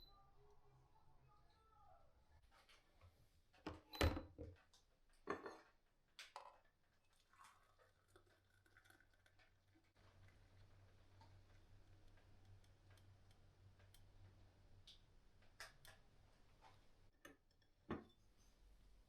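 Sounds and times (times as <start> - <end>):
kitchenware knocking and clinking: 5.3 - 5.7, 17.9 - 18.1.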